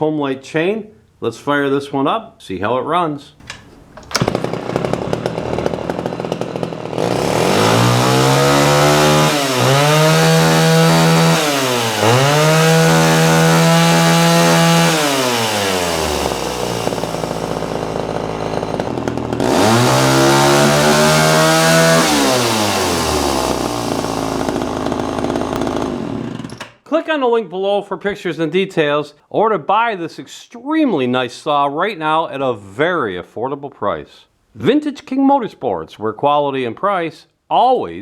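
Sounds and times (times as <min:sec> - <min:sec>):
chainsaw idling and revving: 0:03.4 - 0:26.6.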